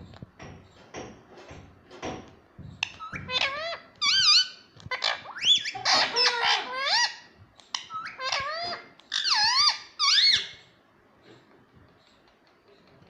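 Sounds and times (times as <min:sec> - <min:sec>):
parrot squawking and chattering: 0:02.8 - 0:10.8.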